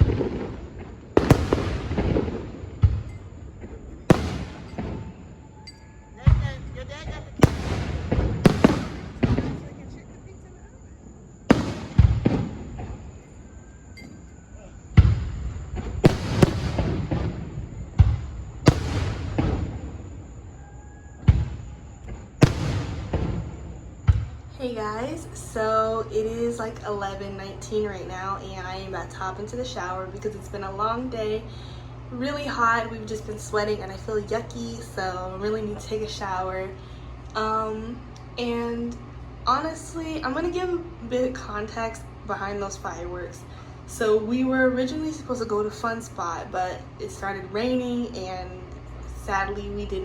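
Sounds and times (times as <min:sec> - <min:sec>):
fireworks booming: 0:00.0 - 0:13.5, 0:14.2 - 0:36.8.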